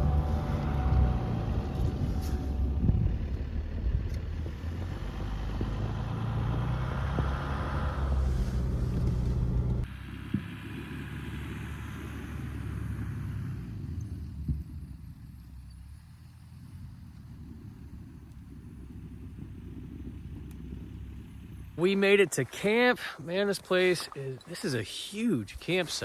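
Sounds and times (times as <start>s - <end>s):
truck engine low hum: 0.0s - 26.0s.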